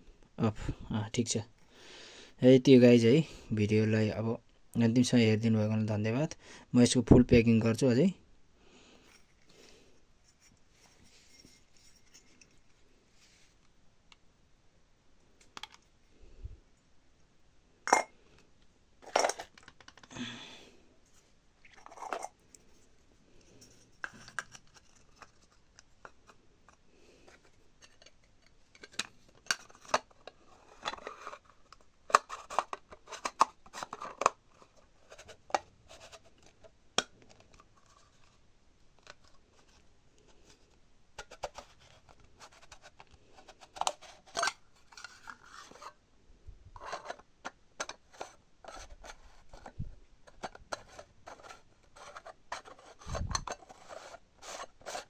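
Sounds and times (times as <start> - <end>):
small parts clicking and tapping: 19.3 - 20.1.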